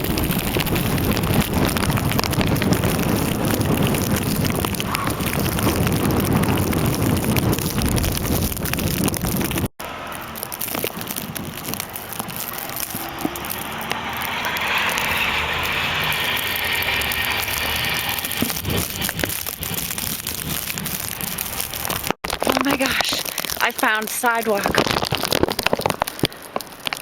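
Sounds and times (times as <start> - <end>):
snow pelting plastic bag: 0.0 - 27.0
blizzard hiss: 11.2 - 22.1.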